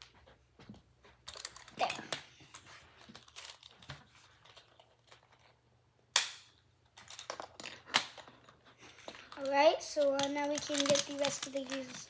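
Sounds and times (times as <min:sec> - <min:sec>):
sharp plastic snap: 0:06.1 - 0:06.6
plastic cube pieces clicking: 0:07.0 - 0:12.0.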